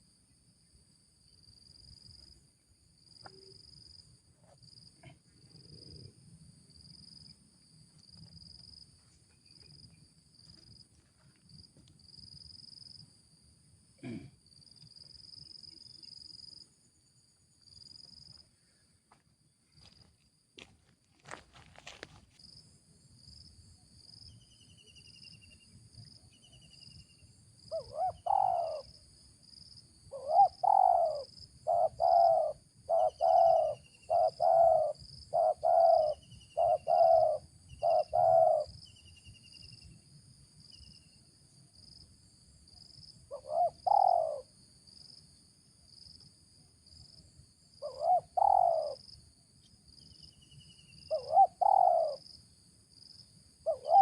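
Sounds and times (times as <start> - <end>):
dove cooing: 27.7 - 28.9, 30.1 - 38.8, 43.3 - 44.5, 47.8 - 49.0, 51.1 - 52.2, 53.6 - 54.0.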